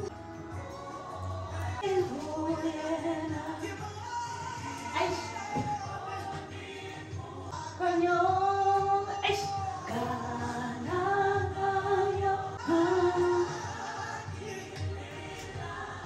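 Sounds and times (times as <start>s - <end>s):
slow song with female vocals: 0.0s - 16.0s.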